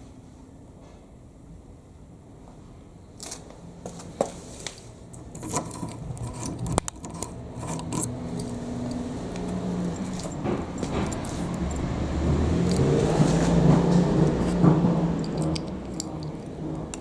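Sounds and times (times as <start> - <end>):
sharp clicks and knocks: 5.2 - 17.0
scraping: 5.4 - 17.0.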